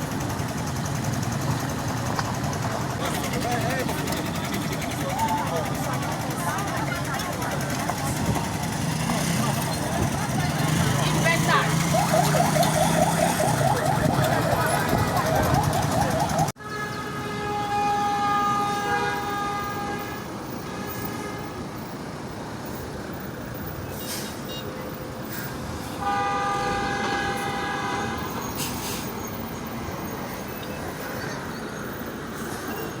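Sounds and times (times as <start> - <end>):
road traffic rumble: 0.0 - 33.0
vehicle horn blasts: 16.6 - 21.5, 26.0 - 28.4.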